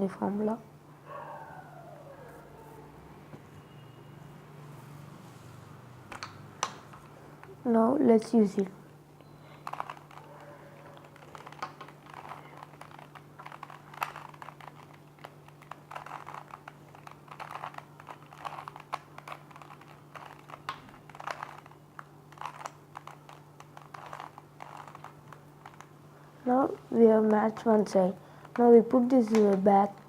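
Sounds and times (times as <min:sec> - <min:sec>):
steady low hum: 0:00.0 - 0:30.0
plastic puzzle cube clicking: 0:06.1 - 0:07.1, 0:09.5 - 0:25.9, 0:28.4 - 0:30.0.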